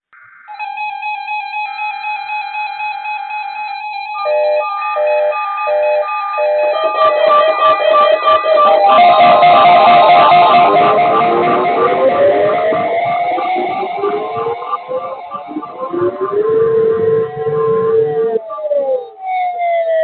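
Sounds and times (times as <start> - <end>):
guitar-led music track: 0.1 - 20.0
synthesized tone line: 4.2 - 19.5
repeating riff: 6.1 - 19.0.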